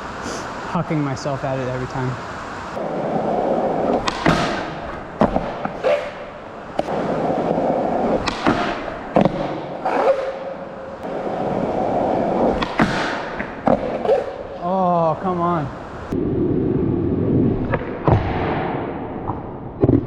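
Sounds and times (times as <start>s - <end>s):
skateboard wheels rolling on concrete: 0.0s - 20.0s
skateboard clacks and knocks: 2.8s - 14.5s.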